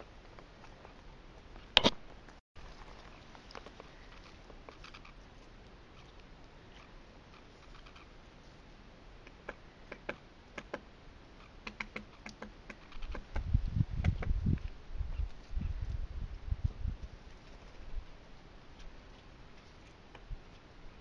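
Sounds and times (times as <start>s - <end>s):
woodpecker tapping on bark: 9.2s - 10.9s, 11.5s - 14.6s.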